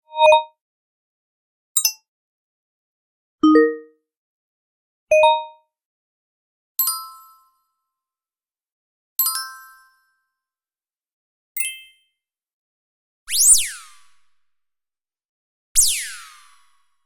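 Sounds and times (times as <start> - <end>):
electronic notification chimes: 3.4 - 3.9.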